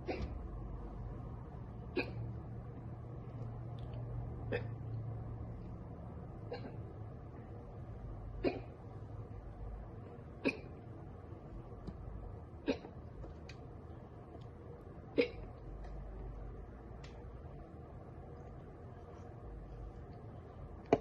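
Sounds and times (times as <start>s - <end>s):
girl hiccupping: 15.1s - 15.6s.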